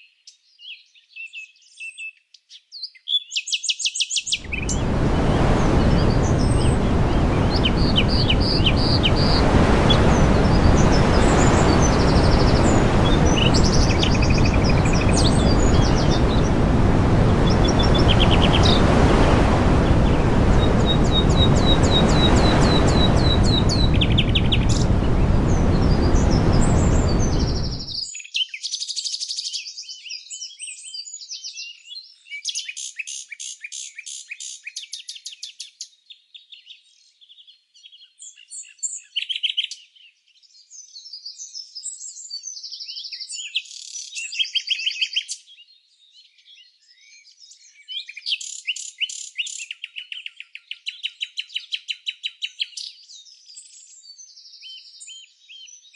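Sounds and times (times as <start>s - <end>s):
songbirds singing: 0.0s - 55.9s
steady rushing background noise: 4.4s - 27.9s.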